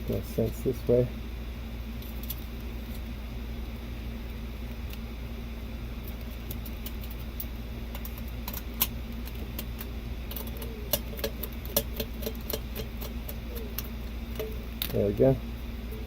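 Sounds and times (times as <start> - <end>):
steady low hum: 0.0 - 16.0
small parts clicking and tapping: 2.0 - 3.1, 6.0 - 15.2.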